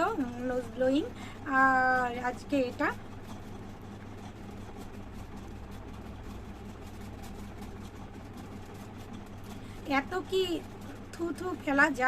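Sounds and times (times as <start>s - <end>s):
low background hum: 0.0s - 12.0s.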